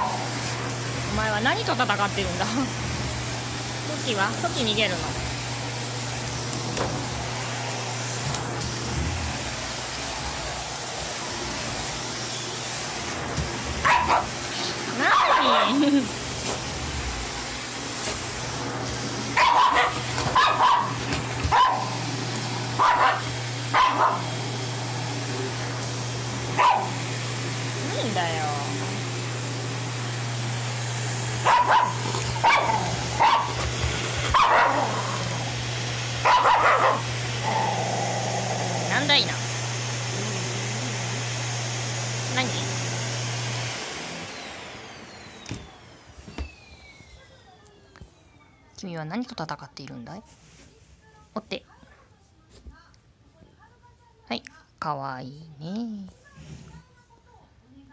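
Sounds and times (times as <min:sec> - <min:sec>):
vacuum cleaner running: 0:00.0 - 0:50.6
dog barking sharply: 0:13.8 - 0:14.3, 0:15.0 - 0:15.7, 0:19.4 - 0:21.9, 0:22.8 - 0:24.2, 0:26.6 - 0:27.0, 0:31.4 - 0:33.6, 0:34.3 - 0:34.9, 0:36.2 - 0:37.0.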